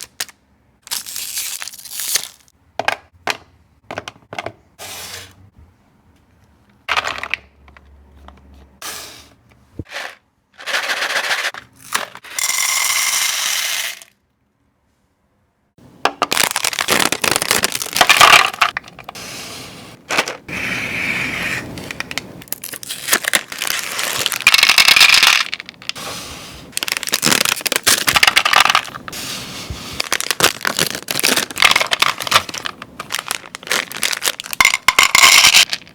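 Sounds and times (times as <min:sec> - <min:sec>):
candy wrappers crinkling: 0:00.0 - 0:02.5, 0:16.2 - 0:19.1, 0:21.9 - 0:26.0, 0:26.7 - 0:29.1, 0:29.9 - 0:35.9
candies clattering and scraping: 0:09.9 - 0:14.1, 0:16.2 - 0:20.5, 0:21.6 - 0:35.9
dense crackling and crunching: 0:16.3 - 0:19.1, 0:22.1 - 0:26.0, 0:26.7 - 0:35.9.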